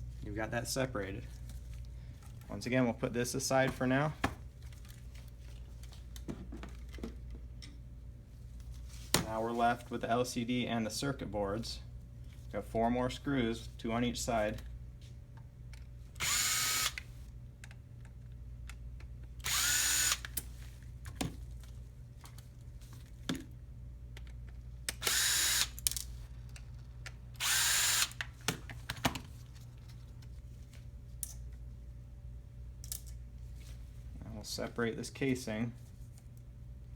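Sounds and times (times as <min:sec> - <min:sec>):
power screwdriver whirring: 0:16.2 - 0:17.0, 0:19.4 - 0:20.4, 0:25.0 - 0:25.8, 0:27.4 - 0:28.2.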